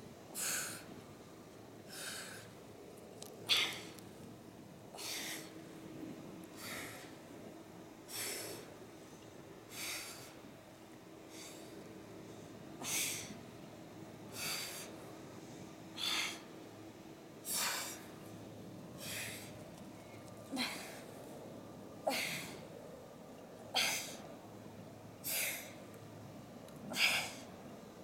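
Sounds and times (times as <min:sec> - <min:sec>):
woman exhaling forcefully: 0:05.0 - 0:05.5, 0:20.5 - 0:21.0, 0:22.1 - 0:22.6.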